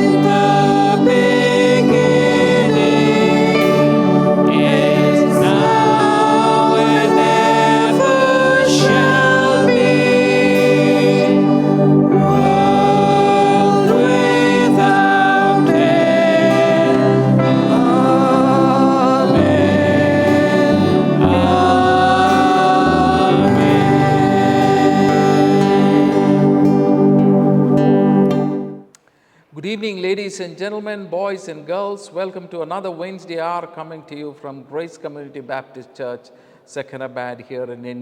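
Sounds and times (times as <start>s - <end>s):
instrumental accompaniment with bass: 0.0s - 28.8s
choir singing held notes: 0.0s - 28.9s.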